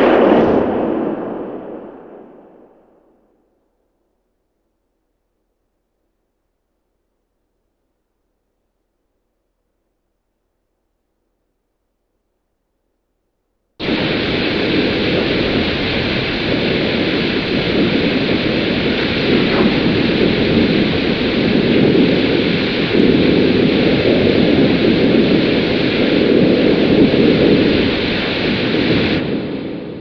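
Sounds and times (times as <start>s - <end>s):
loud rushing roar: 0.0s - 2.8s, 13.8s - 30.0s.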